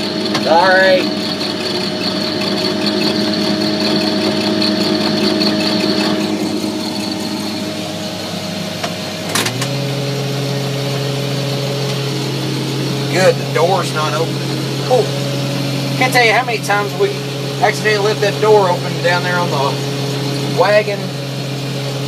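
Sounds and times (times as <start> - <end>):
combine harvester engine running: 0.0 - 22.0
sharp click: 8.8 - 9.8.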